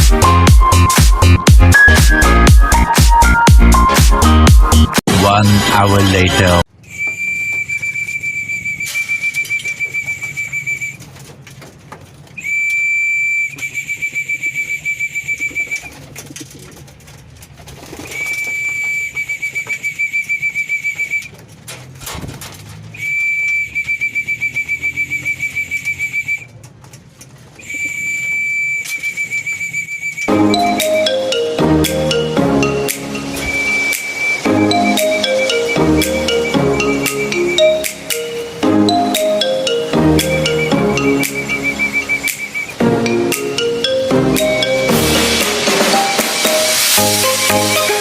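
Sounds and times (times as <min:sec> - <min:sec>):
pea whistle blasts trilling: 0:06.8 - 0:11.0, 0:12.4 - 0:15.7, 0:27.6 - 0:31.2, 0:33.2 - 0:38.6, 0:40.2 - 0:43.8, 0:44.6 - 0:48.0.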